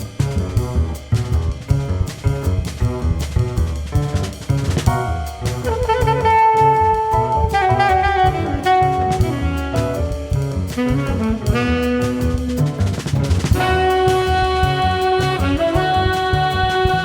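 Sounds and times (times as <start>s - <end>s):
bass: 0.0s - 17.0s
drums: 0.0s - 17.0s
saxophones holding long notes: 5.2s - 13.0s, 13.6s - 17.0s.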